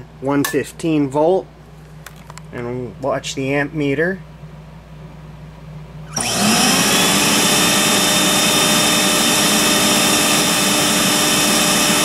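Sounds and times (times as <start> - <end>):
vacuum cleaner motor whining: 6.1 - 12.0.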